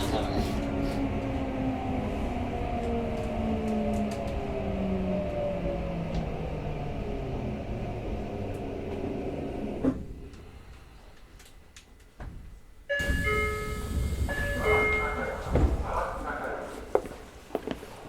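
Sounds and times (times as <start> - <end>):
train clunk: 11.3 - 17.2
bell-like chime tones: 12.9 - 15.3
train braking with inverter whine: 12.9 - 16.5.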